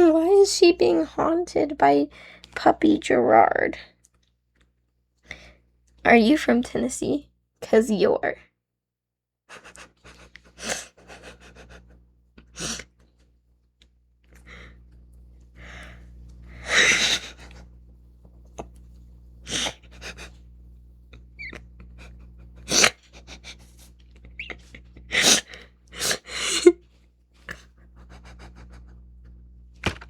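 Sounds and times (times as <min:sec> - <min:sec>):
low electrical hum: 0:00.0 - 0:08.4, 0:09.5 - 0:30.0
sniffs: 0:09.5 - 0:12.9, 0:19.4 - 0:20.4, 0:22.0 - 0:26.7.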